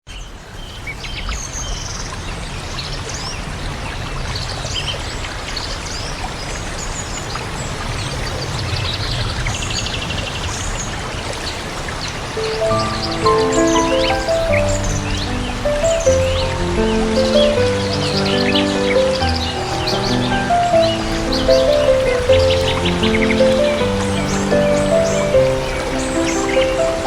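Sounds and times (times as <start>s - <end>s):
running water rushing: 10.4s - 27.0s
small birds chirping: 12.4s - 27.0s.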